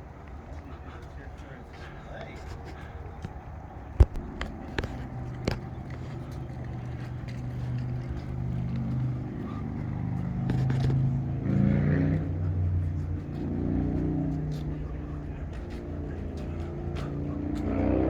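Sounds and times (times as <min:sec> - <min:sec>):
vehicle engine humming: 0:00.0 - 0:18.0.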